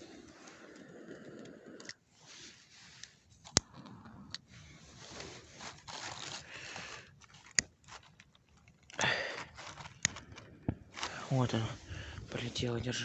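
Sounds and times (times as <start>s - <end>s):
newspaper and sticks crunching: 5.5s - 11.8s.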